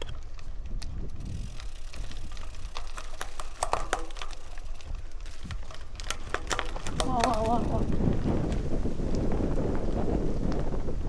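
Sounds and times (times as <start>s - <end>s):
wind rumble on microphone: 0.0s - 11.0s
sharp clicks and ticks: 0.8s - 8.0s.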